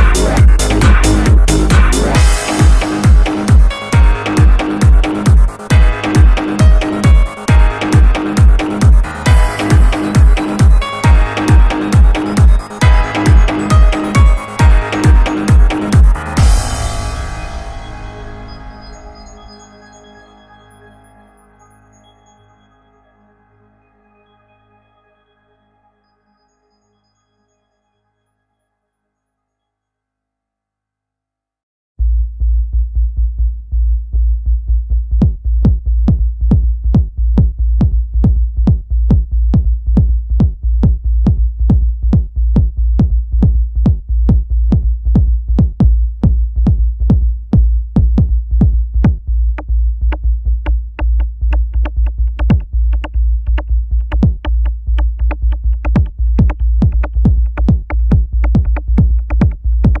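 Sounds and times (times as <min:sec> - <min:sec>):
electronic dance music: 0:00.0 - 0:20.4, 0:54.0 - 1:00.0.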